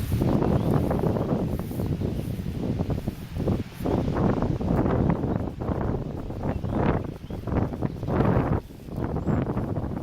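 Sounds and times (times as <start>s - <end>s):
gusty wind on microphone: 0.0s - 10.0s.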